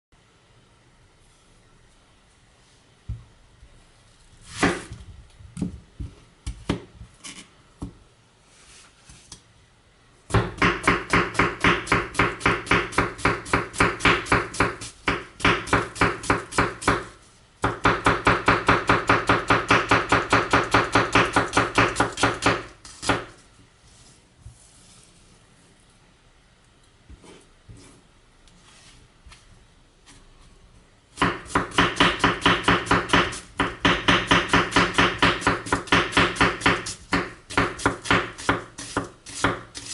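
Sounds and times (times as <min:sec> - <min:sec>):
knife chopping onion on board: 0:04.5 - 0:05.0, 0:05.6 - 0:07.1, 0:10.3 - 0:23.4, 0:31.2 - 0:39.9.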